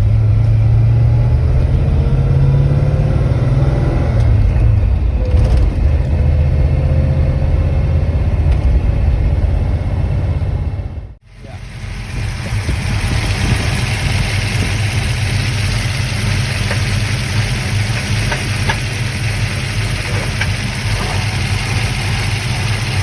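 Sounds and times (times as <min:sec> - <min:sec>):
car engine idling: 0:04.3 - 0:23.0.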